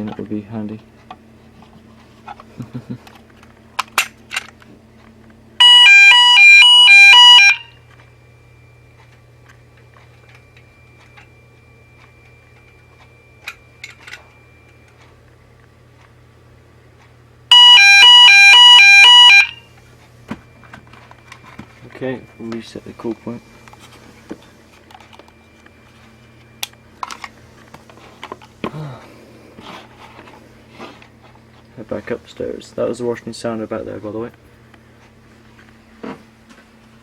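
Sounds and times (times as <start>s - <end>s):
fire alarm two-tone warble: 5.6s - 8.0s, 17.5s - 19.8s.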